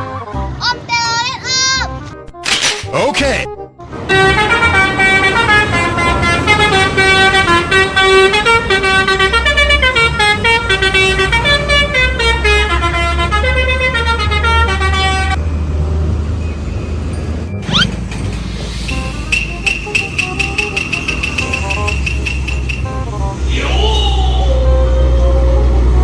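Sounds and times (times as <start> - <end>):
multi-tone musical bus horn: 3.8 - 15.5, 18.8 - 26.0
road noise: 3.8 - 26.0
bus engine rumble: 3.9 - 26.0.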